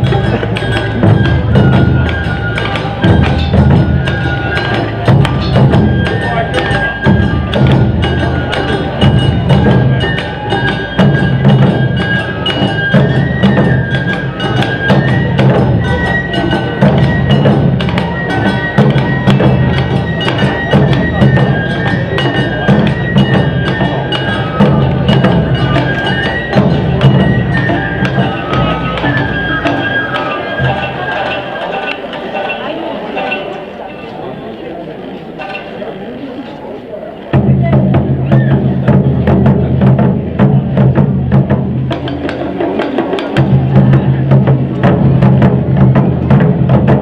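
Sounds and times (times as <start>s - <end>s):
taiko drums: 0.0s - 34.2s, 37.2s - 47.0s
high flute melody: 0.0s - 34.7s.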